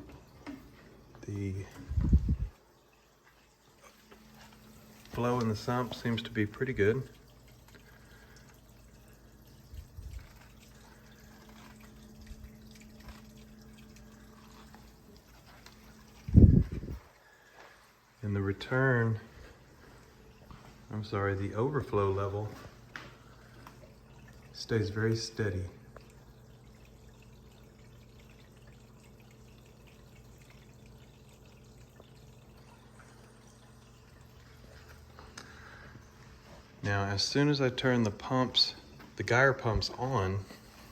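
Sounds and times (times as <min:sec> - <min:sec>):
steady low hum: 0:00.0 - 0:40.9
water trickling and dripping: 0:00.0 - 0:40.9
soft low thumps: 0:01.8 - 0:02.6.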